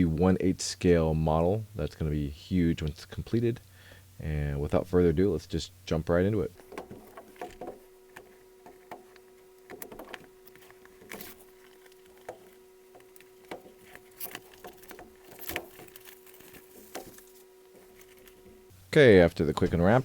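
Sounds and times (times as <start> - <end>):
faint steady hum: 0.0 - 20.0
plastic and cardboard crinkling: 6.4 - 18.7.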